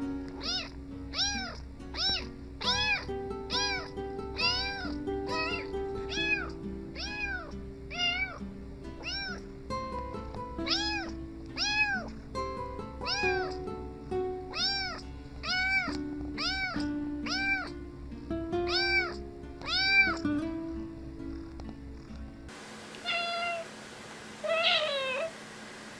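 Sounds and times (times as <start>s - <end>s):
cat meowing: 0.3s - 8.4s, 9.0s - 9.4s, 10.6s - 12.2s, 13.0s - 13.6s, 14.5s - 17.8s, 18.6s - 20.2s, 23.0s - 23.7s, 24.4s - 25.3s
background music with steady beat: 8.4s - 22.4s.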